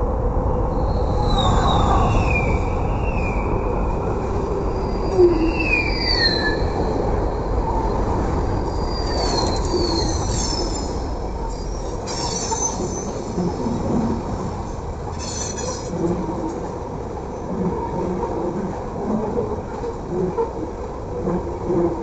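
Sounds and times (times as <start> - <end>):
train wheels rumbling on rail: 0.0 - 22.0
high-pitched wheel squeals: 8.8 - 13.3, 15.1 - 15.9.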